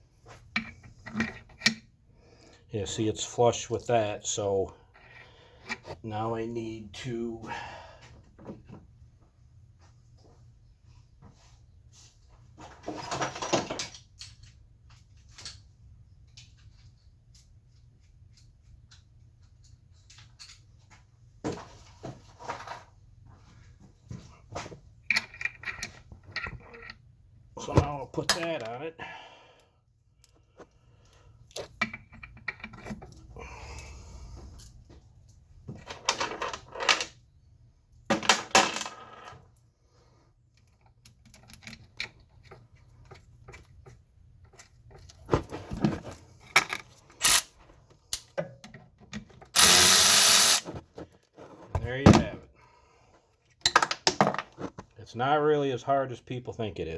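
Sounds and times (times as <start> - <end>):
metal tools clinking: 49.6 - 50.6.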